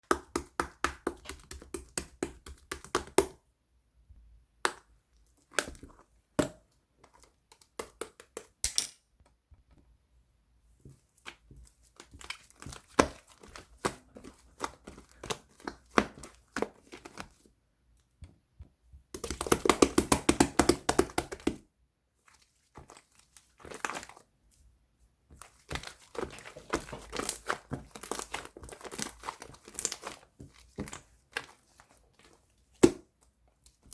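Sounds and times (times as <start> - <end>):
slime squishing by hand: 0.0 - 3.4, 10.8 - 21.6, 22.2 - 33.9.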